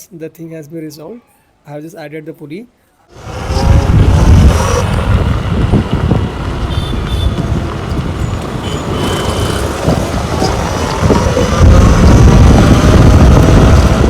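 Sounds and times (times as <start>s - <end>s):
wind and road noise: 3.1s - 14.0s.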